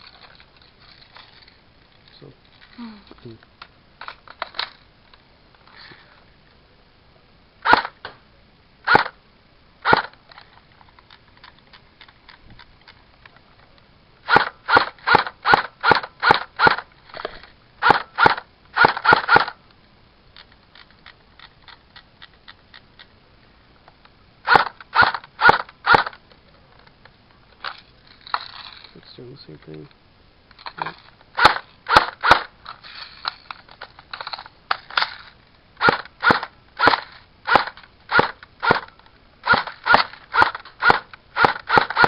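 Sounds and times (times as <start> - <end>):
airsoft rifle shots: 7.6 - 8.1, 8.9 - 9.2, 9.8 - 10.2, 14.3 - 16.9, 17.8 - 19.6, 24.4 - 26.2, 31.4 - 32.5, 35.8 - 42.0.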